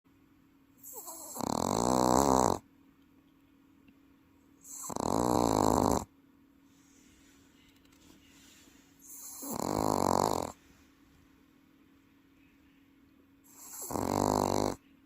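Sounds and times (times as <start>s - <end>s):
dog snoring loudly: 0.8s - 2.6s, 4.6s - 6.1s, 9.0s - 10.6s, 13.5s - 14.8s.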